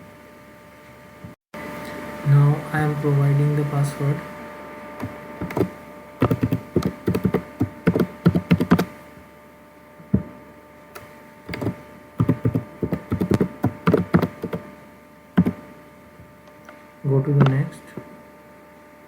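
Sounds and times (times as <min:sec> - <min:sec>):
faint steady hum: 0:00.0 - 0:19.0
computer keyboard typing: 0:05.0 - 0:08.9, 0:11.0 - 0:14.7, 0:15.4 - 0:15.6.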